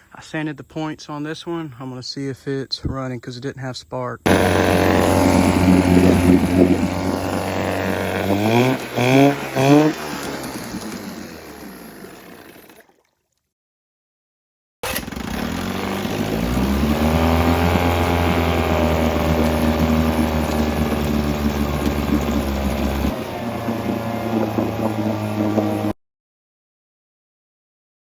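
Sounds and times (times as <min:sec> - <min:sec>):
outboard motor running: 0:04.3 - 0:12.9, 0:14.8 - 0:26.0.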